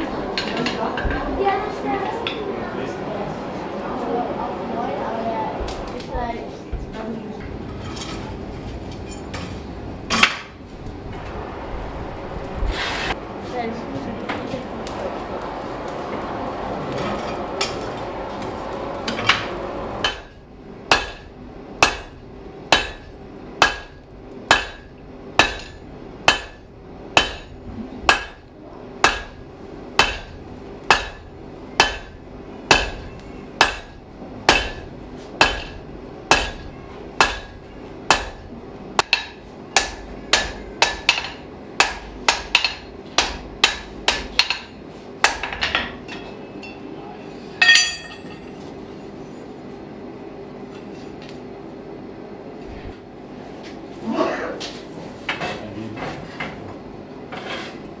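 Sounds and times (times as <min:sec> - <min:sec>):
hammer striking iron on anvil: 0:19.1 - 0:26.6, 0:27.2 - 0:28.4, 0:29.0 - 0:29.4, 0:30.0 - 0:46.8, 0:47.6 - 0:48.6.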